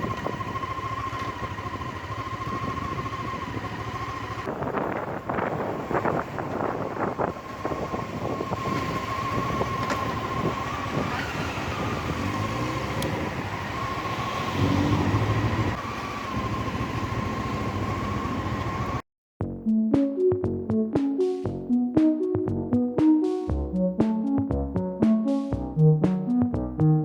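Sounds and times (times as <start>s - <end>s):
motorcycle engine: 0.0s - 19.0s
wind and road noise: 0.0s - 19.0s.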